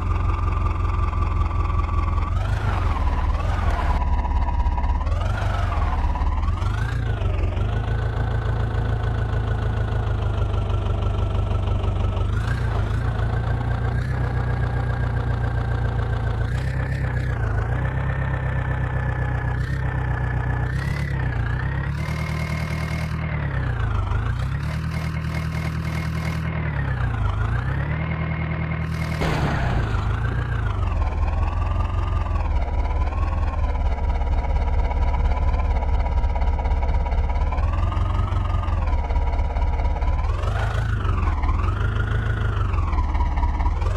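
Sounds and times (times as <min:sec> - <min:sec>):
heavy diesel engine revving: 0:02.2 - 0:09.0.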